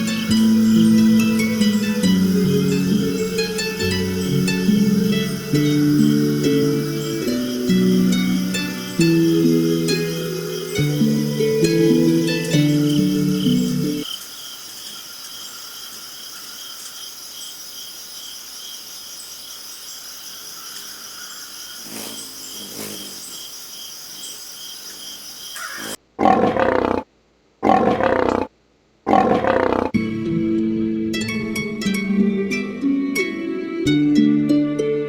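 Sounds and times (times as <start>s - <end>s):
plucked harp music: 0.0s - 14.0s, 30.0s - 35.0s
steady hiss: 0.0s - 26.0s
insect chirping: 0.0s - 27.0s, 29.1s - 30.0s
loud animal roars: 25.6s - 27.0s, 27.6s - 28.5s, 29.1s - 30.0s.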